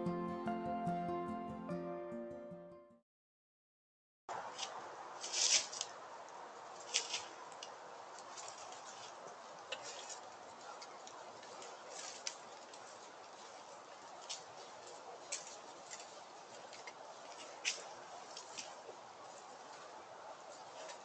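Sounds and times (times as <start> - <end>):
rustling in dry leaves: 4.3 - 21.0
steady outdoor hiss: 4.3 - 21.0.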